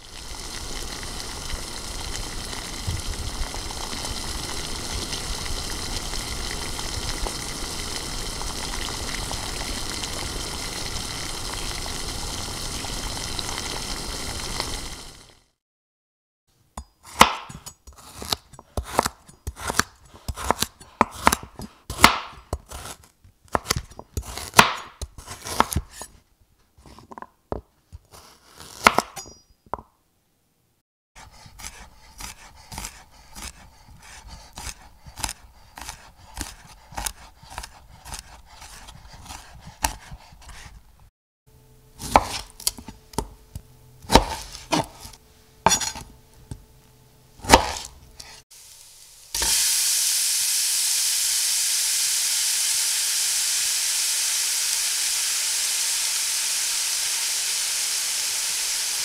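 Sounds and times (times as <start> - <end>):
knife chopping on cutting board: 16.8 - 26.2, 28.0 - 29.2, 31.2 - 40.8, 42.0 - 46.6, 47.4 - 48.4
low steady hum: 41.5 - 49.3.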